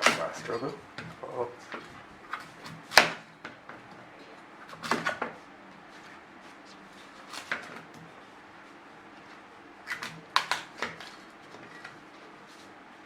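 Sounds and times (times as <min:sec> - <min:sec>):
knife chopping pumpkin: 0:00.0 - 0:03.3, 0:04.7 - 0:05.4, 0:07.0 - 0:08.0, 0:09.9 - 0:11.2.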